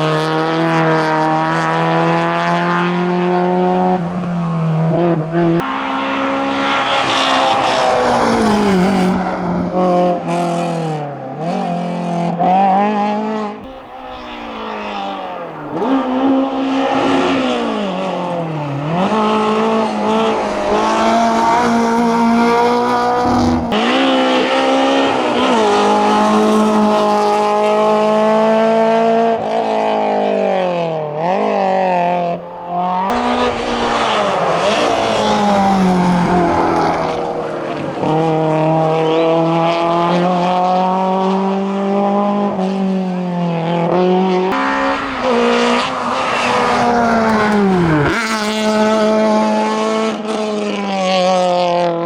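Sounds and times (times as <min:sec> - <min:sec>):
race car engine revving: 0:00.0 - 0:52.0.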